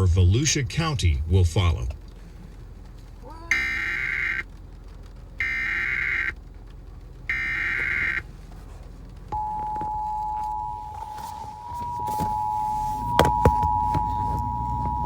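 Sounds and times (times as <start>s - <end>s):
harsh buzzing data bursts: 3.3s - 4.5s, 5.4s - 6.4s, 7.3s - 8.2s
two-tone attention signal: 3.5s - 4.4s, 7.3s - 8.2s.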